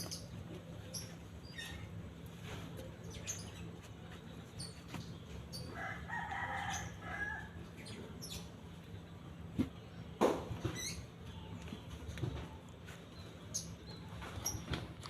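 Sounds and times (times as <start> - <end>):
small birds chirping: 0.0 - 15.0
distant rooster crowing: 5.6 - 7.7.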